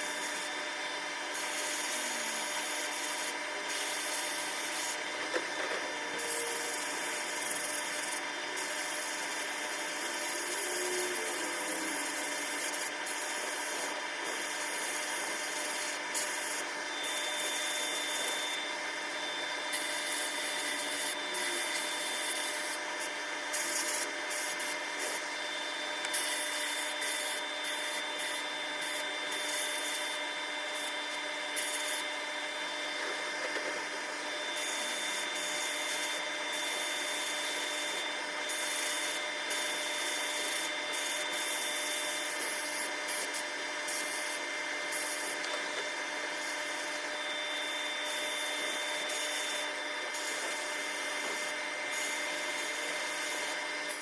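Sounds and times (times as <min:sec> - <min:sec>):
power tool humming: 0:00.0 - 0:54.0
abrasive rubbing on power tool: 0:01.3 - 0:32.1.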